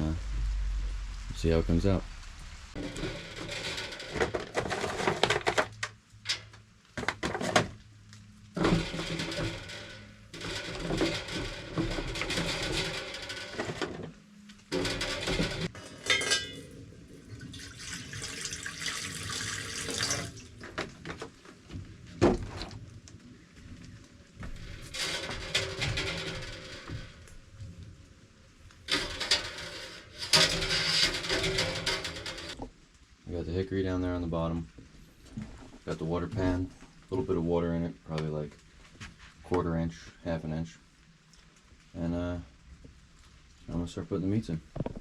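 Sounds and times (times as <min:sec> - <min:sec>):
knocks and clatter of handling: 0:02.8 - 0:16.7, 0:20.0 - 0:28.0, 0:28.7 - 0:32.8, 0:44.6 - 0:45.0
water pouring and splashing: 0:14.6 - 0:21.5.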